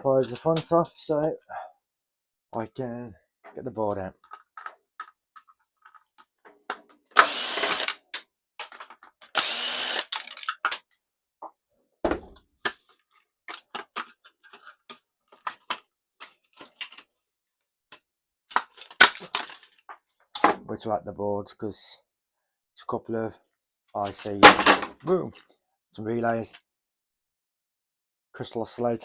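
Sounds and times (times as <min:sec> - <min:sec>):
power driver whirring: 0:07.2 - 0:08.0, 0:09.4 - 0:10.2.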